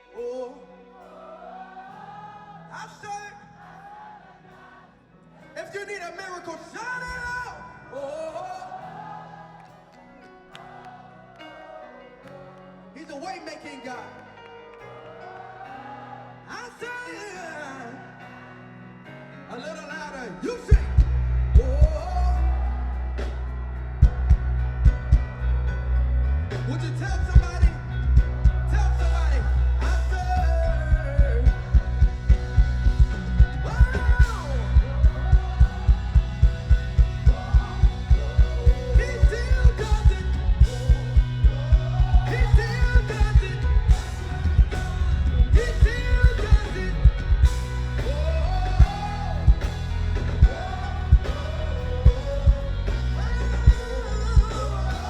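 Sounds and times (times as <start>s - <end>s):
person singing: 0.0s - 4.8s, 19.5s - 25.4s, 26.4s - 55.0s
live gospel band playing: 0.0s - 55.0s.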